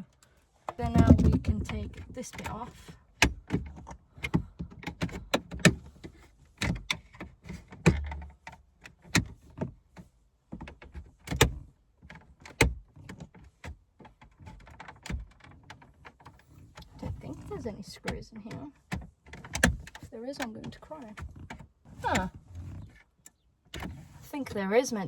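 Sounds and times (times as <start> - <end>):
hard plastic clicking and snapping: 10.5 - 24.0.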